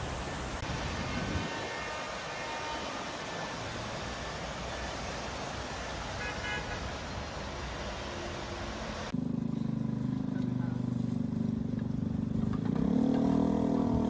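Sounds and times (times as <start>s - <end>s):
city street traffic: 0.0s - 14.0s
car horn toot: 1.0s - 3.0s, 6.2s - 6.9s.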